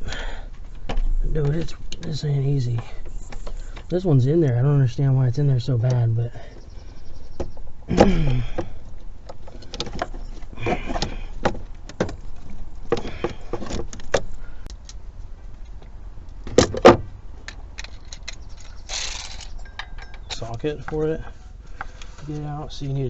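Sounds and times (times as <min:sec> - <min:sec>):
hand tools clinking on metal: 0:17.8 - 0:21.3.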